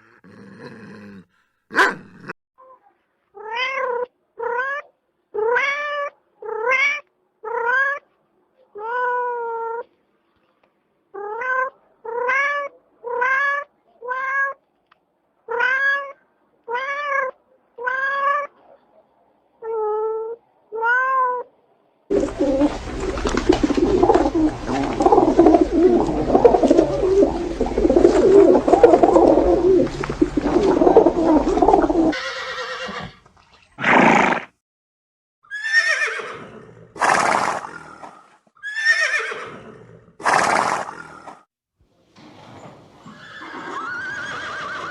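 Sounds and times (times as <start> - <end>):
cat meowing: 15.5 - 18.5
dense continuous noise: 22.1 - 32.1.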